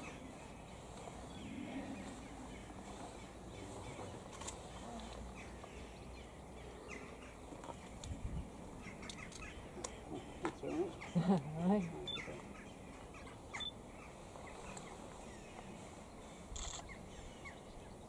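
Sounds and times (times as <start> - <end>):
short bird calls: 11.8 - 15.6
sharp clicks: 16.6 - 16.9.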